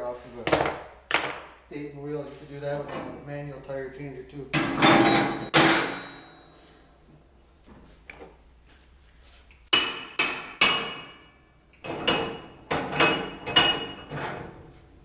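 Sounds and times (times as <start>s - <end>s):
sharp metal strikes ringing: 4.8s - 7.1s.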